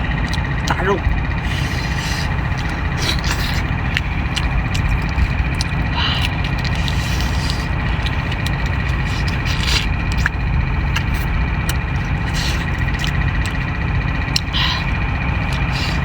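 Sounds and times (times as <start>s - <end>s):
constant high whine: 0.0s - 16.0s
steady low rumble: 0.0s - 16.0s.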